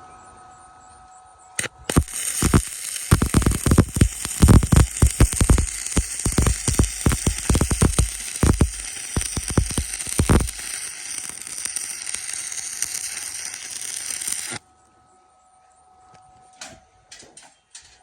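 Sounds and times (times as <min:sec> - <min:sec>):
arc welding crackling hiss: 0:01.6 - 0:14.6.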